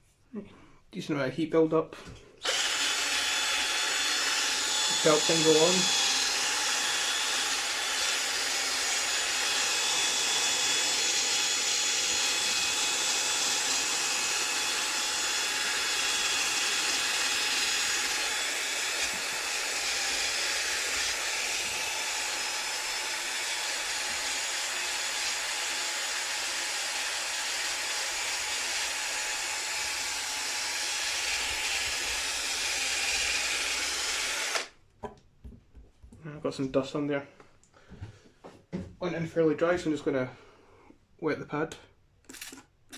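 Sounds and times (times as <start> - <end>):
electric polisher buffing: 2.4 - 34.7.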